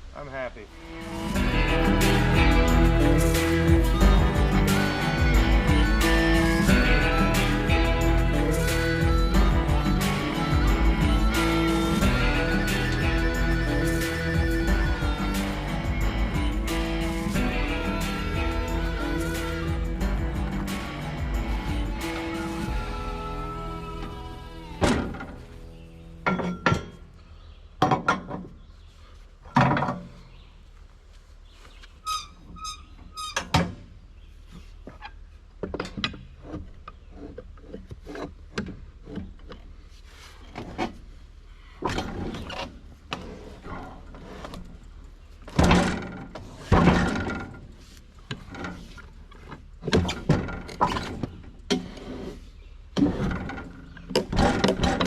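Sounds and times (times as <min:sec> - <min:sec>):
squeaks: 0:31.9 - 0:33.8
wood thunks and knocks: 0:45.5 - 0:47.7, 0:53.0 - 0:55.0.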